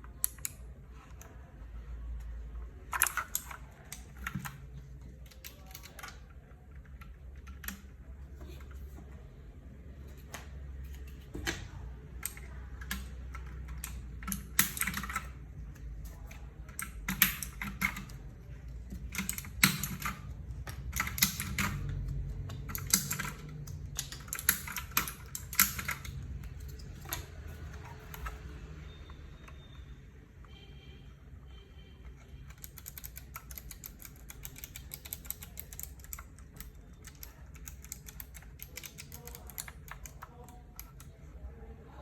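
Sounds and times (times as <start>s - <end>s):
mechanical keyboard key clicks: 10.9s - 28.5s, 32.4s - 41.2s.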